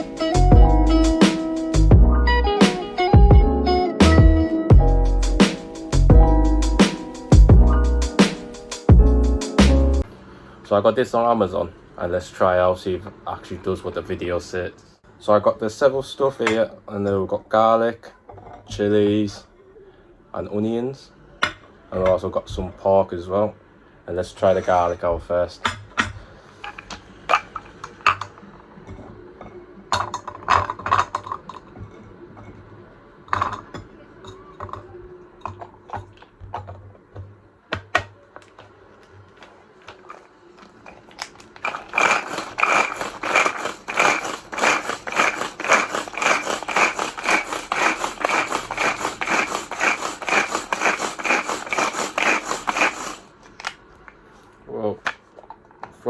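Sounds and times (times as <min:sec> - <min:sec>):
chopper handling clicks and clatter: 0:41.1 - 0:53.2
pull cord whirring rattle: 0:41.2 - 0:53.3.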